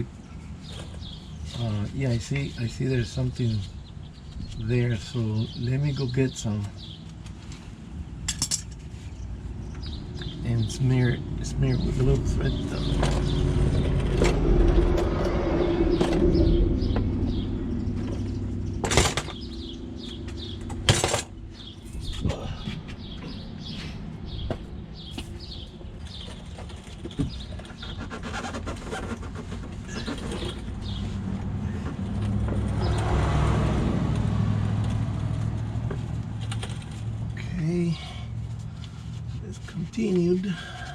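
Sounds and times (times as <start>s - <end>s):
small birds chirping: 0.0s - 33.1s, 35.9s - 40.9s
vehicle passing: 9.5s - 25.1s, 29.9s - 39.3s.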